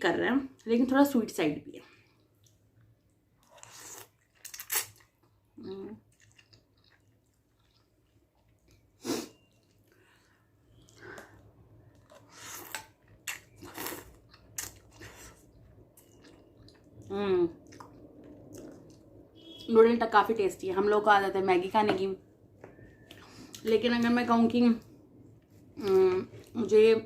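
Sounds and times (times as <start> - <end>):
person chewing noodles: 1.9 - 19.1.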